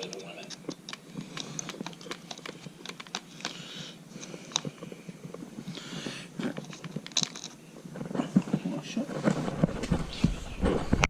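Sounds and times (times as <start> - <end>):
small parts clicking and tapping: 0.0 - 5.8, 6.4 - 7.6
scraping rustles: 4.2 - 11.0.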